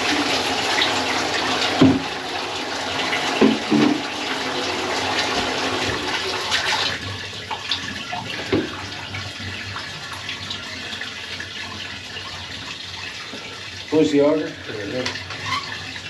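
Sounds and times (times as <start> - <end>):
water rushing: 0.0 - 10.8.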